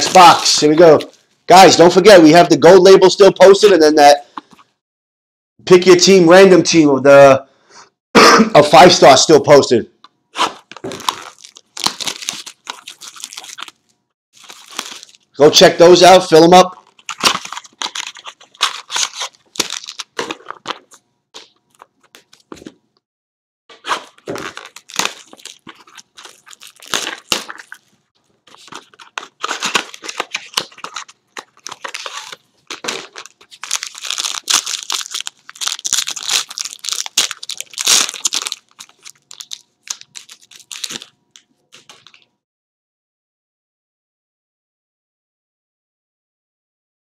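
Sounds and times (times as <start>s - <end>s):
packaging torn and crinkled: 0.0s - 1.2s, 10.4s - 15.3s, 16.7s - 22.8s, 23.9s - 42.3s.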